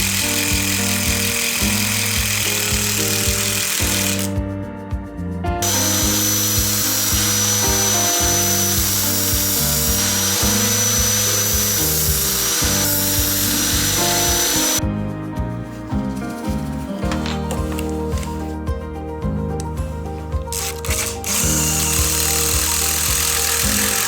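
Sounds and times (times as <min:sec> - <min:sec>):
power tool whining: 0:00.0 - 0:04.3, 0:05.6 - 0:14.8, 0:20.5 - 0:24.0
background music with beat: 0:00.0 - 0:24.0.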